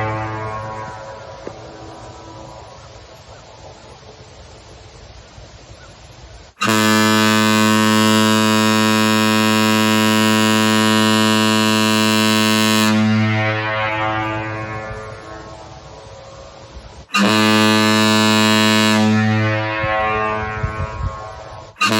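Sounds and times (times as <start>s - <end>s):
ship horn blast: 0.0s - 2.4s, 6.6s - 16.1s, 17.1s - 21.9s.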